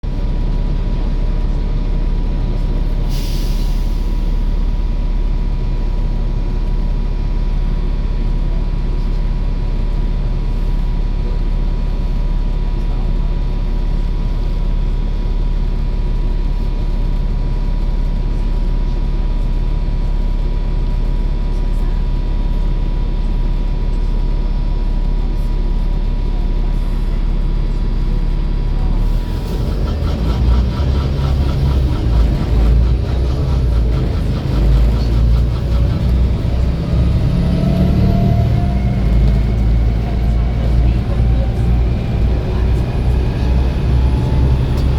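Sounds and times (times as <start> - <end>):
bus engine drone: 0.0 - 44.9
air brake hiss: 3.0 - 4.2.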